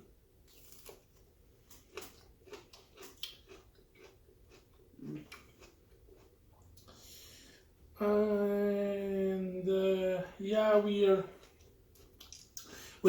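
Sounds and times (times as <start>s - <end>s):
people chewing food: 0.5s - 7.3s, 11.3s - 13.0s.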